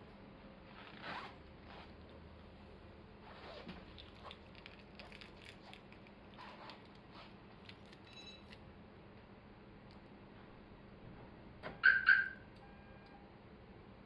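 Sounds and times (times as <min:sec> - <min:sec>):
faint clicks and rustles: 0:03.2 - 0:08.6
faint high beep: 0:08.1 - 0:08.5, 0:11.8 - 0:13.2.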